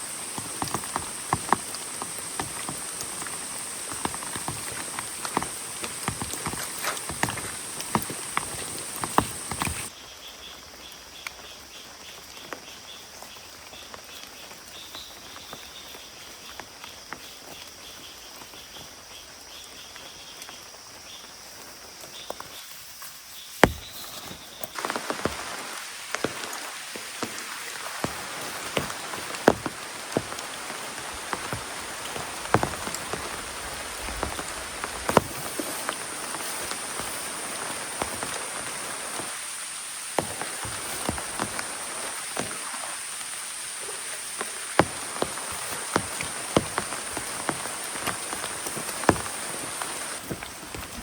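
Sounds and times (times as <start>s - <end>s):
loud raindrops striking close by: 0.0s - 9.9s, 24.7s - 51.0s
steady rain falling: 0.0s - 51.0s.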